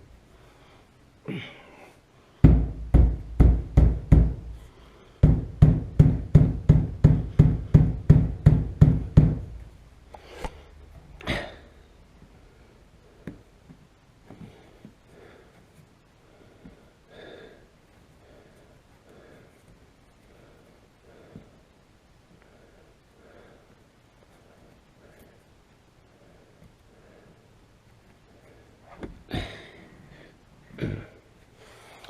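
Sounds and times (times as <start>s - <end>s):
dull knocks on window glass: 2.4s - 4.6s, 5.2s - 9.6s.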